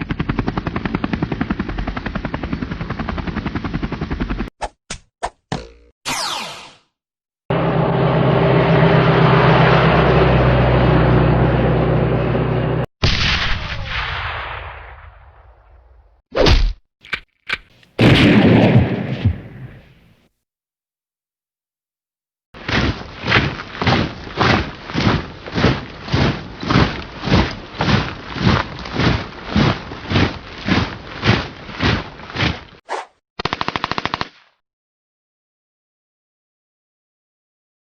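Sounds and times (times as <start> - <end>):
heavy gunshots with low boom: 13.0 - 15.6, 18.0 - 20.1
rapid fire gun burst: 18.0 - 19.9, 33.4 - 34.5
sudden blast: 18.0 - 19.9.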